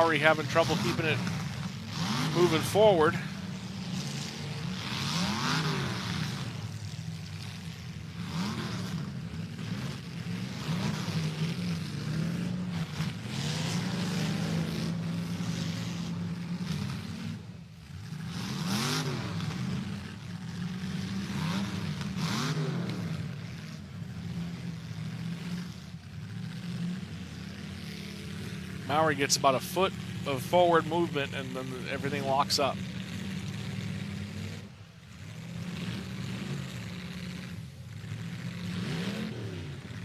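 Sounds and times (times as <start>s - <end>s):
car engines revving: 0.0s - 40.0s.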